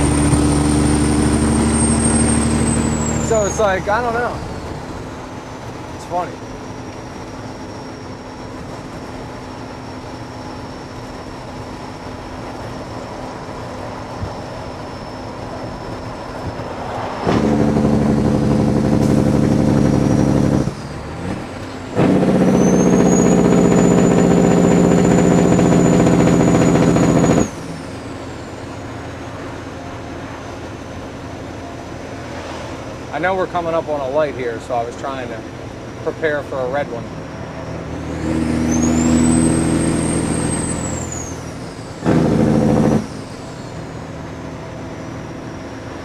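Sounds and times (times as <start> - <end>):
turbo whistle: 0.0 - 4.6, 17.2 - 28.8, 38.0 - 44.0
diesel truck engine with loud exhaust: 0.0 - 46.0.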